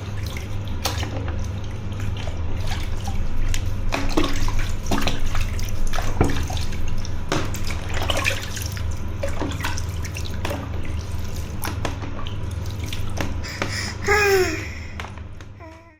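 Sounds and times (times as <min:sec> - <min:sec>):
running water: 0:07.6 - 0:15.0.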